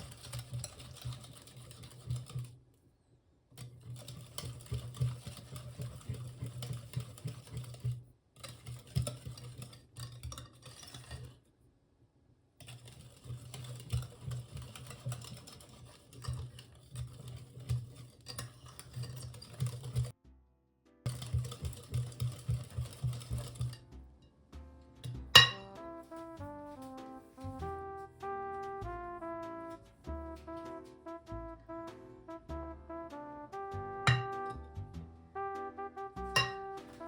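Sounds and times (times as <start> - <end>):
utensil beating batter in bowl: 0.0 - 2.6, 3.5 - 11.4, 12.6 - 20.2, 21.1 - 24.0.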